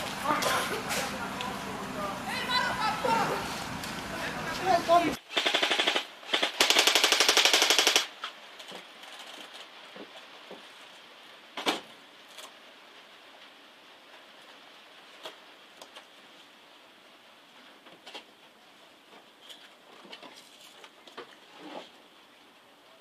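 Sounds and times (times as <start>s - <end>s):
airsoft gun full-auto burst: 5.2s - 8.1s.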